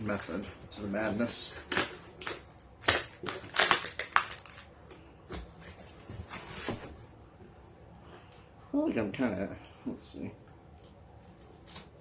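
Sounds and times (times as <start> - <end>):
cardboard crackling and scraping: 5.4 - 7.1.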